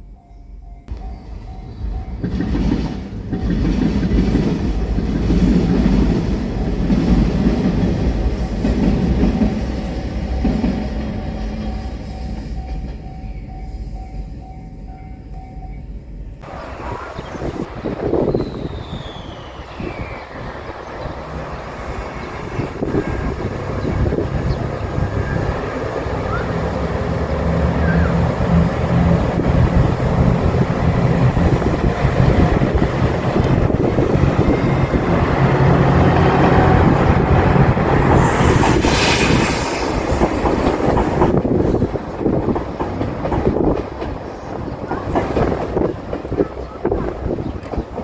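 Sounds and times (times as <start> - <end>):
diesel train engines humming: 0.0 - 48.0
train wheels rumbling and clattering: 0.0 - 48.0
high hissing squeal: 9.5 - 15.9, 16.5 - 30.8, 37.8 - 40.9.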